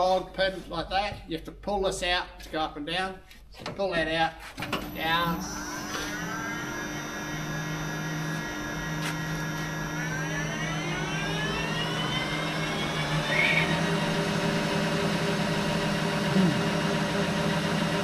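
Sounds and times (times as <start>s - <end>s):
metal lathe whining: 4.6s - 18.0s.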